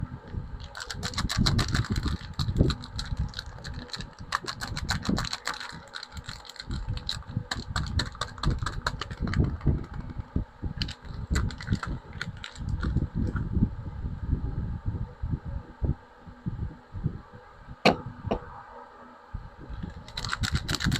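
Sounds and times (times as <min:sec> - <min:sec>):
packaging crinkling and rustling: 0:00.6 - 0:10.0.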